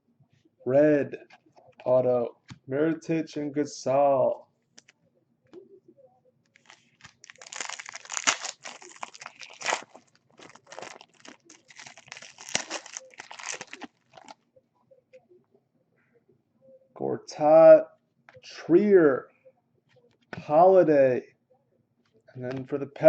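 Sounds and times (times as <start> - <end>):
card pack wrapper crinkling: 6.5 - 14.4.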